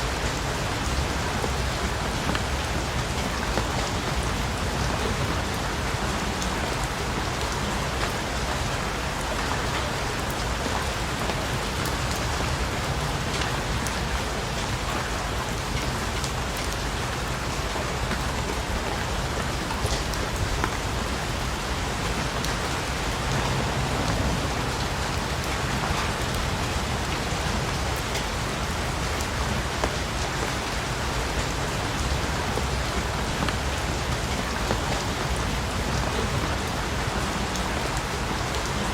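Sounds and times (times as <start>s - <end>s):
rain falling on a surface: 0.0s - 38.9s.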